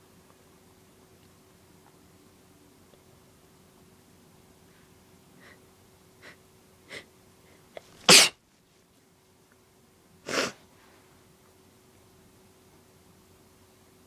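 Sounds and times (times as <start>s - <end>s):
woman sneezing: 8.0s - 8.4s, 10.3s - 10.6s.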